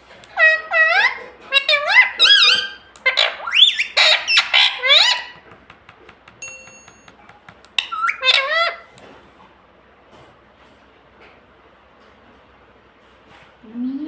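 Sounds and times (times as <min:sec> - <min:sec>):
parrot warbling squawks: 0:00.3 - 0:05.4, 0:07.8 - 0:08.9.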